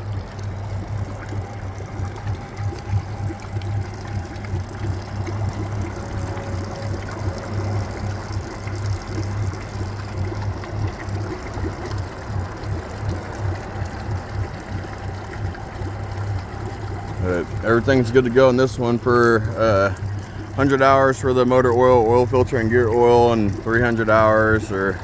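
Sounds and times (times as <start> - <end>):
outboard motor idling: 0.0 - 25.0
water trickling and splashing: 0.0 - 25.0.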